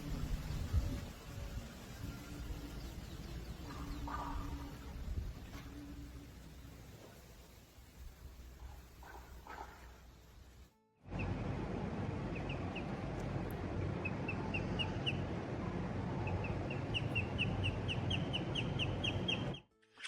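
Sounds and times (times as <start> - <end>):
steady rushing background noise: 0.0 - 19.7
small bird peeping: 16.2 - 19.6.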